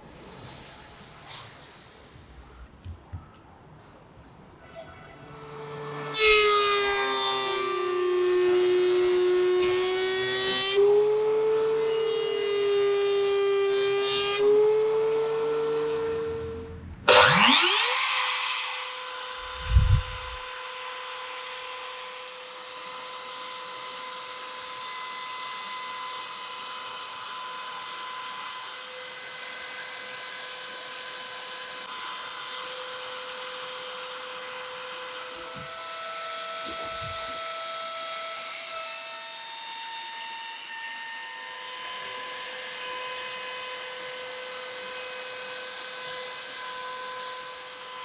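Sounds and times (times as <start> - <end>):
router spindle milling wood: 15.6 - 20.4
wavering pitched tone: 17.0 - 18.1, 19.4 - 20.4.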